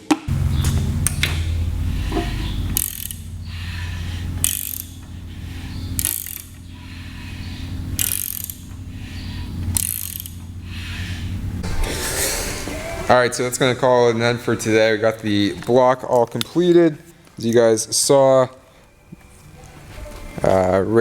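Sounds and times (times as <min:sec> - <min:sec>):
steady low hum: 0:00.3 - 0:15.7
socket ratchet clicking: 0:02.7 - 0:03.7, 0:04.4 - 0:07.0, 0:08.0 - 0:08.8, 0:09.6 - 0:10.5.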